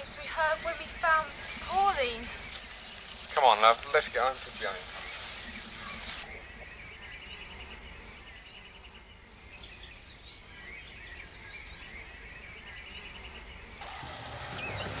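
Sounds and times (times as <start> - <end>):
tape hiss: 0.0 - 10.7
crickets chirping: 0.0 - 14.0.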